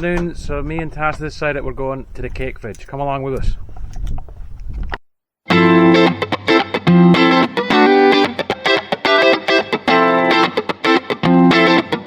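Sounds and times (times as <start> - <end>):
music with electric guitar: 5.5 - 12.0.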